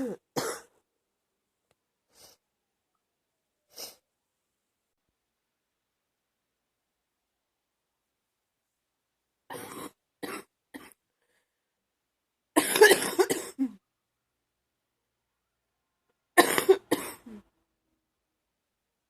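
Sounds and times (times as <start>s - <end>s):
woman coughing: 0.0s - 0.8s, 9.5s - 11.0s, 12.6s - 13.8s, 16.4s - 17.4s.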